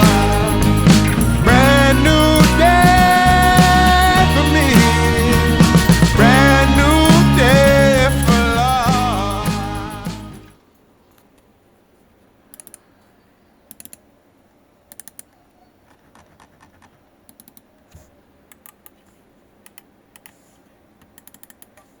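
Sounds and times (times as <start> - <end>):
faint mouse clicking: 12.5 - 12.9, 13.6 - 14.1, 14.9 - 15.4, 16.0 - 22.0.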